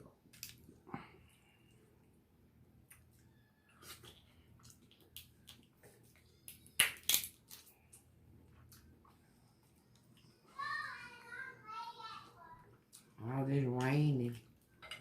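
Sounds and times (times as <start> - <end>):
wet eating crunches: 2.8 - 8.1.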